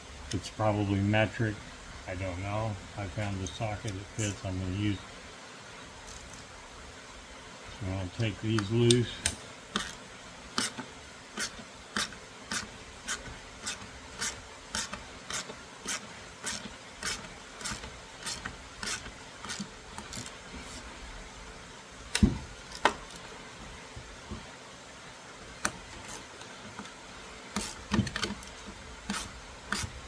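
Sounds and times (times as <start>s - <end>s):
socket ratchet clicking: 9.2s - 10.0s, 10.6s - 10.8s, 11.4s - 20.3s
loud knocks: 22.2s - 23.0s.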